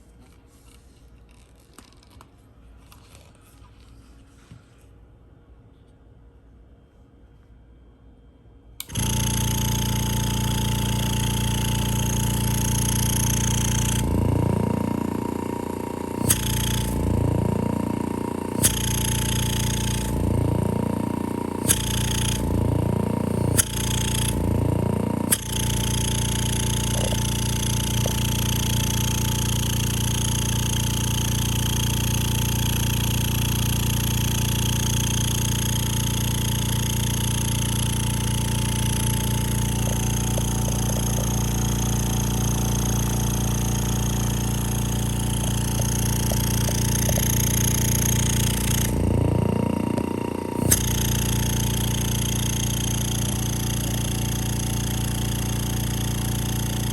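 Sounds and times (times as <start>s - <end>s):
vacuum pump humming and hissing: 8.8s - 56.9s
sharp clicks: 38.7s - 43.1s, 45.1s - 54.1s.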